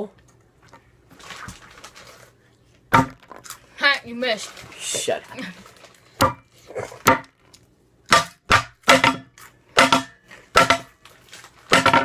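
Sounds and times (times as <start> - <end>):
sword striking hard surface: 8.1 - 10.9, 11.7 - 12.0.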